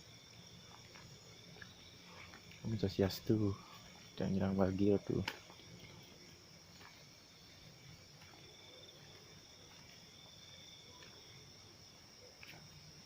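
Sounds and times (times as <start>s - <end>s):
night insects chirring: 0.0s - 13.0s.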